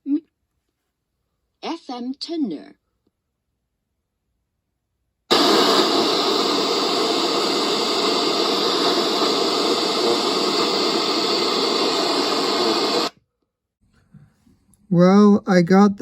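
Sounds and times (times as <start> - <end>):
radio static hiss: 5.3 - 13.1.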